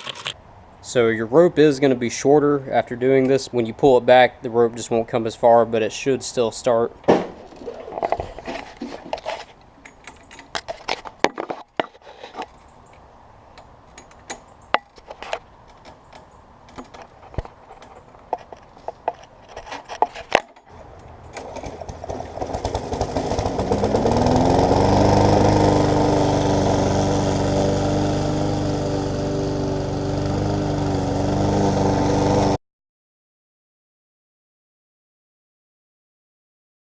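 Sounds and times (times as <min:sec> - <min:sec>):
lawnmower engine starting and running: 0:20.7 - 0:32.6.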